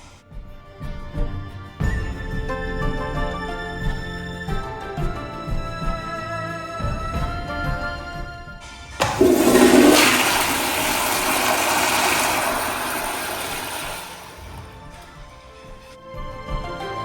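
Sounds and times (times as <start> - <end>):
toilet flush rush of water: 9.0 - 14.8.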